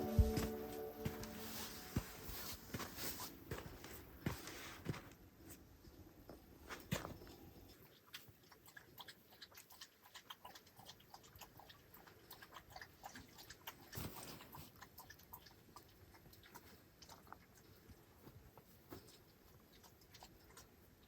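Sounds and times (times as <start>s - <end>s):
dog chewing: 7.7s - 18.2s, 18.9s - 21.0s.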